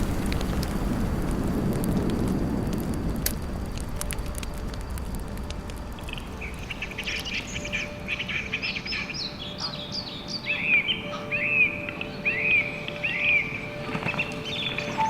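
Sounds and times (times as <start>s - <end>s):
faint low rumble: 0.0s - 9.0s
wild birds chattering: 6.5s - 15.0s.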